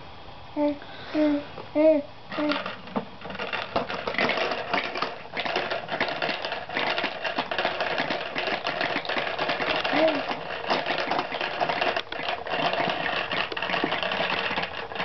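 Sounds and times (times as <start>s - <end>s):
baby babbling: 0.6s - 2.6s
small hard objects rattling: 2.3s - 15.0s.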